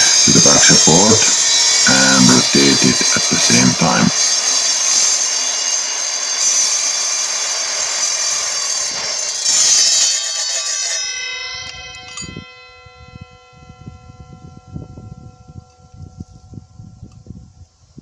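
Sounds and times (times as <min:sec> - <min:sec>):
mitre saw cutting steel pipe: 0:00.0 - 0:02.4, 0:04.1 - 0:11.0
metallic ringing tones: 0:04.1 - 0:16.9.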